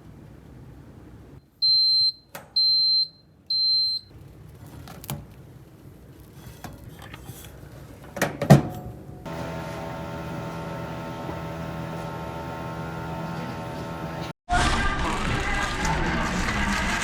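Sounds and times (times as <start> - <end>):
kitchen appliance beeps: 1.6 - 4.1.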